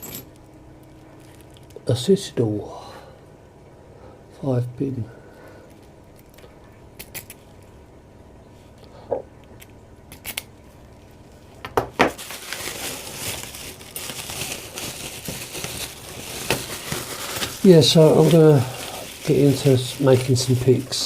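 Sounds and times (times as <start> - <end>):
packaging crinkling rustle: 0.3 - 1.9, 10.8 - 21.0.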